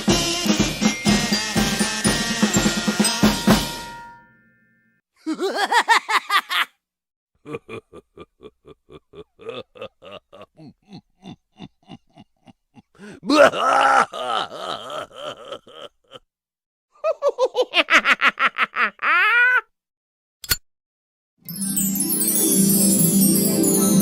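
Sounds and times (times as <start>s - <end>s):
drum kit music sting: 0.0s - 4.2s.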